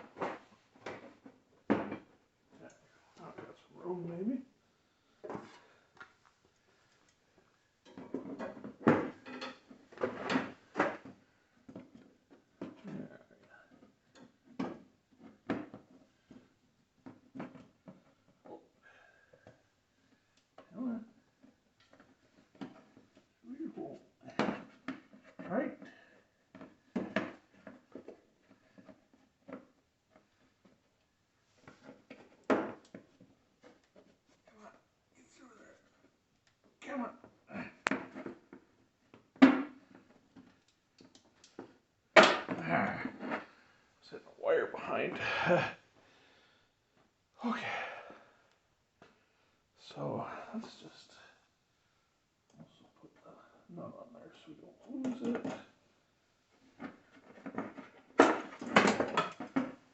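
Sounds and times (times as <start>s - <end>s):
tools knocking and scraping: 7.8s - 11.1s.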